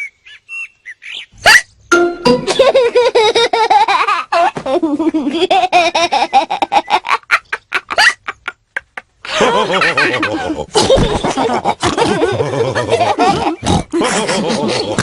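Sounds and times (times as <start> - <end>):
cartoon characters laughing: 2.2 - 15.0
pig snorts: 13.5 - 15.0.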